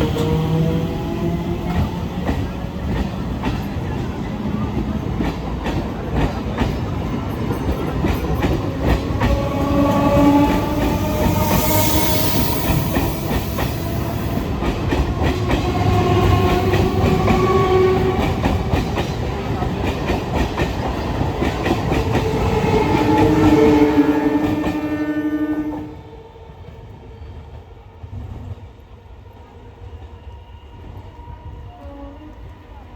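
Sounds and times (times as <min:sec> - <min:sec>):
train rumble: 0:00.0 - 0:32.9
train horn: 0:08.8 - 0:18.8, 0:22.2 - 0:26.2, 0:31.2 - 0:32.8.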